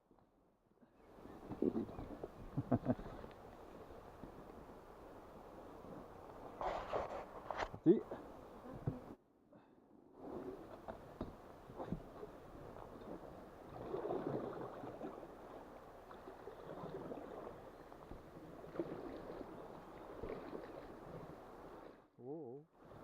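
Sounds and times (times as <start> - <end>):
paddles splashing water: 1.1 - 9.2, 10.2 - 22.1.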